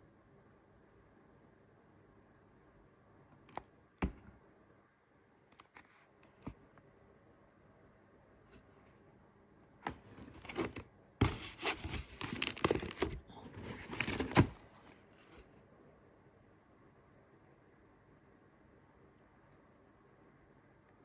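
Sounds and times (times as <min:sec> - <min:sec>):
packaging crinkling and tearing: 0:10.4 - 0:14.6.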